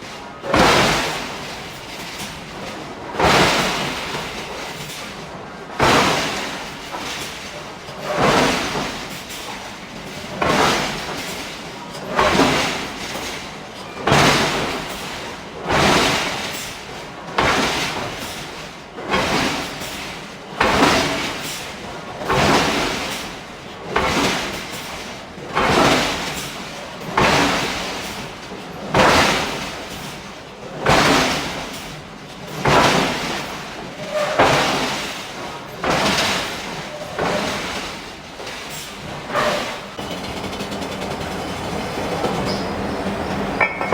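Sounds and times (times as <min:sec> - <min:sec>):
forging hammer striking steel: 0:39.4 - 0:43.9.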